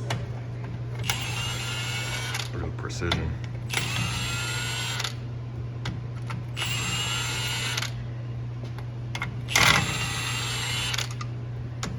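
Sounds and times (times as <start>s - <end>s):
impact wrench whining: 1.0s - 2.5s, 3.7s - 5.2s, 6.3s - 8.0s, 9.2s - 11.3s.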